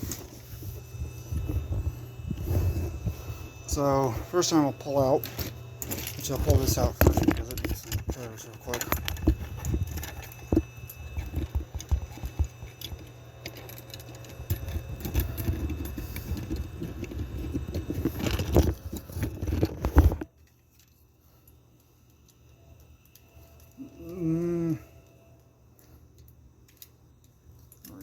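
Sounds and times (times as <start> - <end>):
person humming: 23.8 - 25.0.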